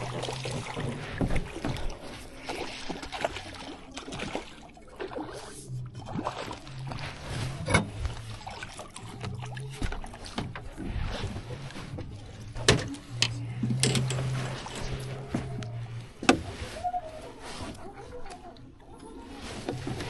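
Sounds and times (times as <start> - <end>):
water splashing: 0.0 - 20.0
low hum: 4.8 - 20.0.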